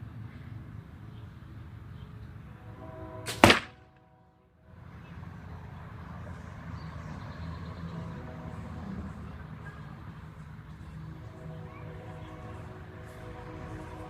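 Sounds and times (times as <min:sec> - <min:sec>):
arrow shot from a bow: 0:03.3 - 0:03.8.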